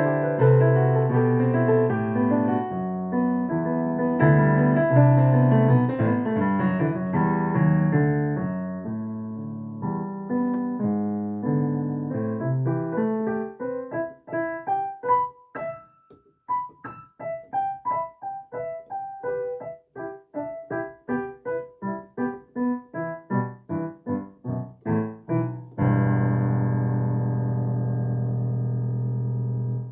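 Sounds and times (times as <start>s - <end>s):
solo piano music: 0.0s - 29.9s.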